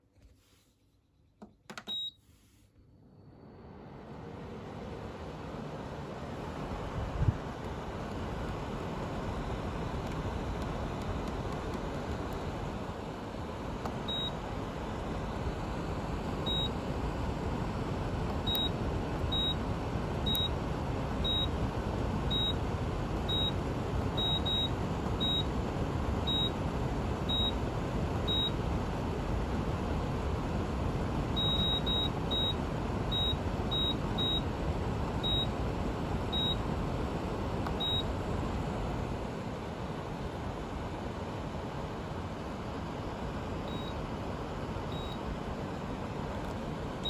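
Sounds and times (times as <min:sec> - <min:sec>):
dehumidifier fan running: 0:02.8 - 0:47.0.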